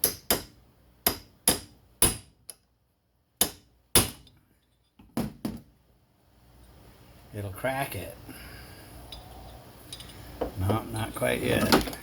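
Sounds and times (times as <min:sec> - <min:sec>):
hammer striking metal chisel: 0:00.0 - 0:02.7, 0:03.4 - 0:04.3.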